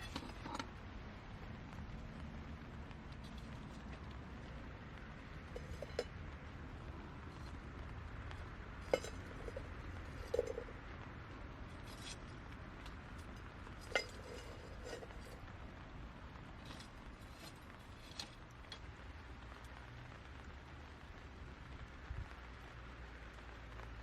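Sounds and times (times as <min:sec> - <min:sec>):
utensils clinking on cookware: 0:05.6 - 0:06.1, 0:13.8 - 0:15.4.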